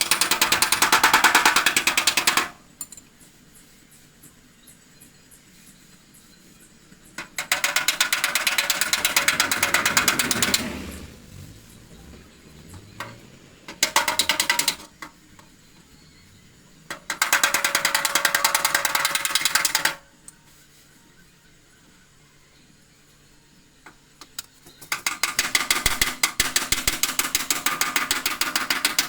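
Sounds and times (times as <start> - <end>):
hammer tapping on sheet metal: 7.2 - 10.4, 24.9 - 29.0.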